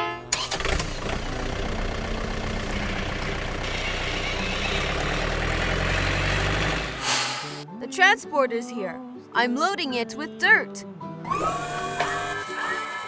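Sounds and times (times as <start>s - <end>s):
bulldozer engine running: 0.3s - 7.6s.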